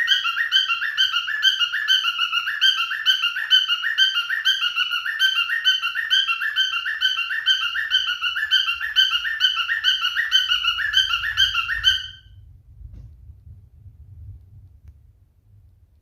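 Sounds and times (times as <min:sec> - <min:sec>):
cockatiel whistling: 0:00.0 - 0:12.3.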